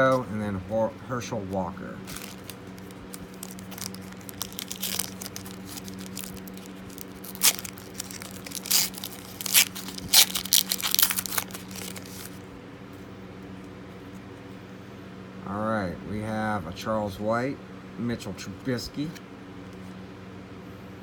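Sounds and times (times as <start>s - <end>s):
low hum: 0.0s - 16.8s
foil wrapper tearing and crinkling: 2.0s - 12.4s.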